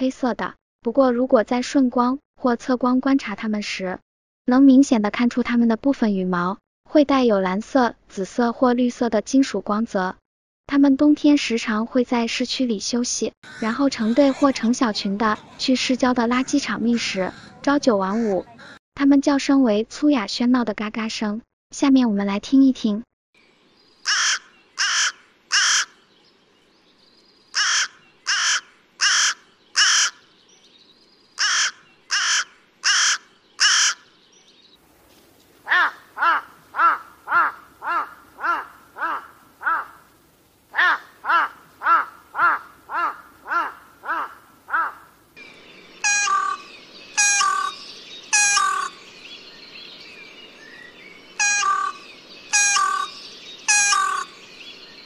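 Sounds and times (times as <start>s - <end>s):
crow cawing: 13.4s - 14.6s, 16.4s - 18.8s, 24.0s - 26.0s, 27.5s - 30.3s, 31.4s - 34.1s, 35.7s - 40.1s, 40.7s - 45.1s, 46.0s - 49.0s, 51.4s - 54.4s
background hiss: 34.4s - 55.0s.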